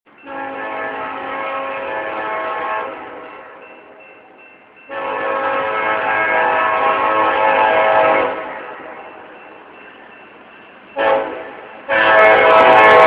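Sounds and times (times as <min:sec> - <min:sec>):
locomotive air horn blasts: 0:00.2 - 0:03.6, 0:04.9 - 0:09.0, 0:11.0 - 0:13.0.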